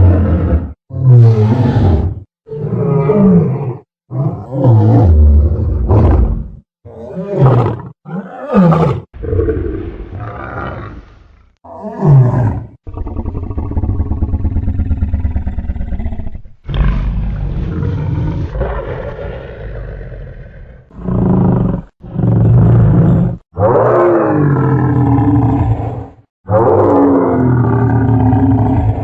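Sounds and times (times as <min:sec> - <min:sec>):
deep creature roars and growls: 0:00.0 - 0:29.0.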